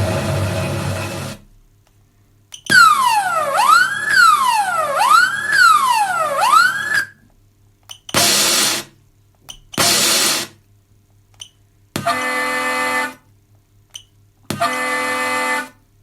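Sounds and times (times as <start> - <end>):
fire truck siren wailing: 0.0 - 1.4, 2.7 - 7.2.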